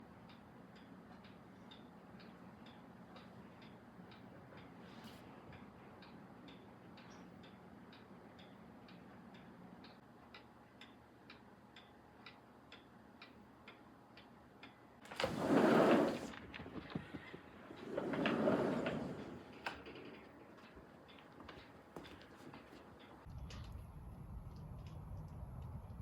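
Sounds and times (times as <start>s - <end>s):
clock ticking: 0.0s - 4.8s, 5.5s - 14.8s.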